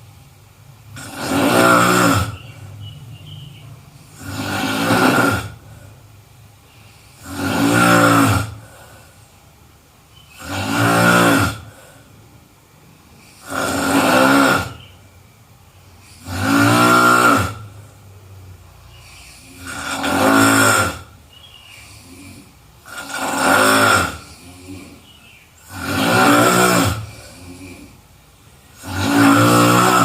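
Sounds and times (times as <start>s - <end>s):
person snoring loudly: 0.9s - 2.7s, 4.0s - 6.0s, 6.9s - 9.2s, 10.3s - 12.1s, 13.2s - 15.0s, 16.0s - 18.0s, 18.8s - 28.0s, 28.7s - 30.0s.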